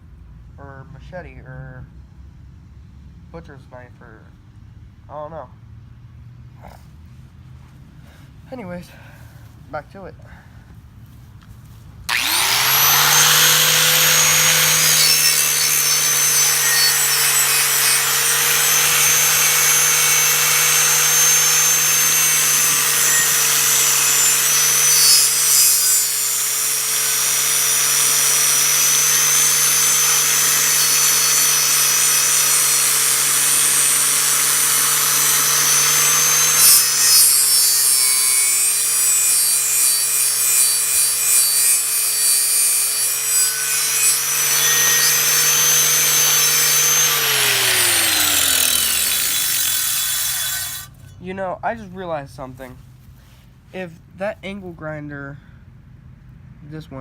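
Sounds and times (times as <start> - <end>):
angle grinder scraping rusty metal: 12.1 - 51.3.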